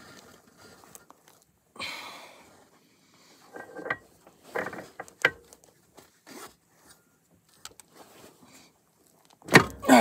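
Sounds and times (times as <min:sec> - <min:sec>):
metallic scrapes and clunks: 0:03.4 - 0:05.6.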